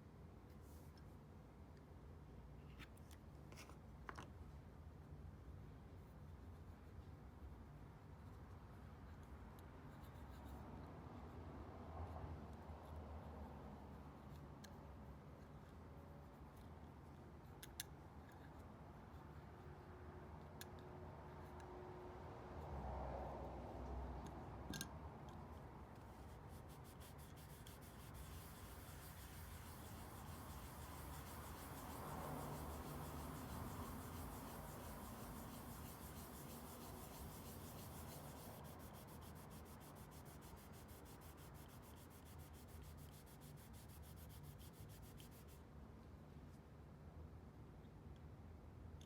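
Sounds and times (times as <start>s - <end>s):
sanding metal by hand: 26.3s - 45.6s.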